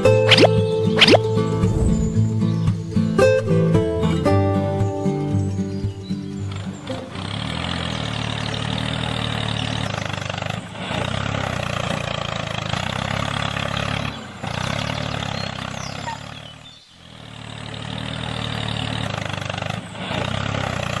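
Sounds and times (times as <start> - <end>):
engine running with hiss: 6.1 - 21.0.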